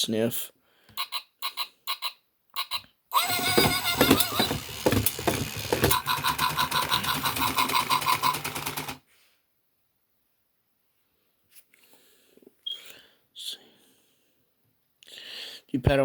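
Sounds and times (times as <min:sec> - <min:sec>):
robot toy electronic tones: 0:01.0 - 0:08.9.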